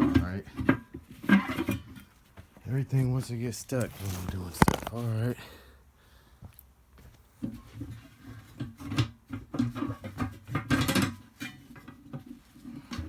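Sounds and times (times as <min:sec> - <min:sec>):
metal knocks clanks and scrapes: 0:00.0 - 0:02.1.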